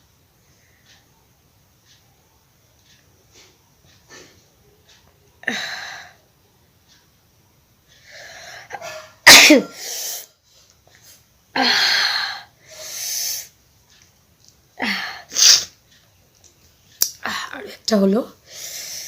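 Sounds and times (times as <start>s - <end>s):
woman sneezing: 8.9s - 10.0s
drawn-in breath: 11.0s - 13.6s, 18.4s - 19.0s.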